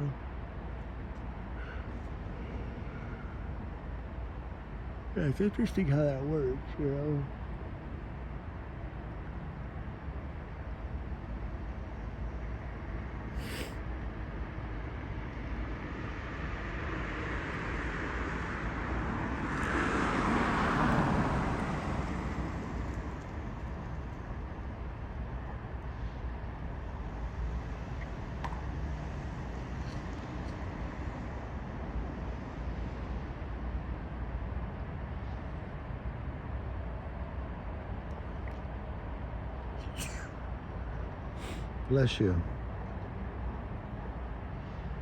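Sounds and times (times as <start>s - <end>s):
low rumble of traffic: 0.0s - 45.0s
car passing: 16.0s - 23.6s.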